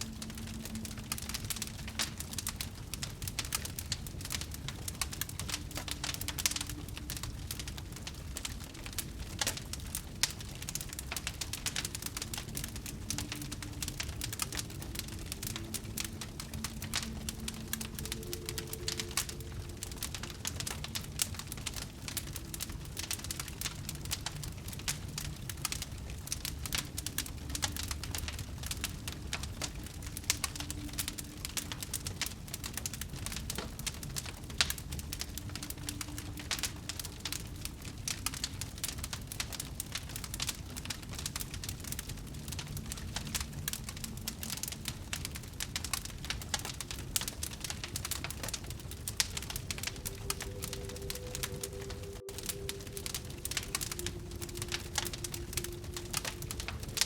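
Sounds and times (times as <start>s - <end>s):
wood fire crackling and popping: 0.0s - 57.0s
low rumble: 47.5s - 57.0s.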